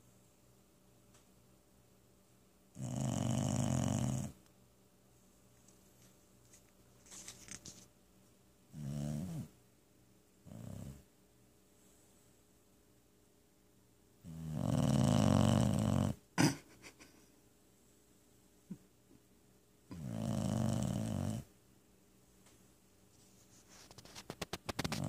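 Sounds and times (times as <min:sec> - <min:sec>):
dog snoring: 0:02.7 - 0:04.4, 0:08.7 - 0:09.5, 0:10.4 - 0:11.0, 0:14.2 - 0:16.6, 0:19.9 - 0:21.5, 0:24.7 - 0:25.0
crackly snuffle: 0:22.5 - 0:25.0.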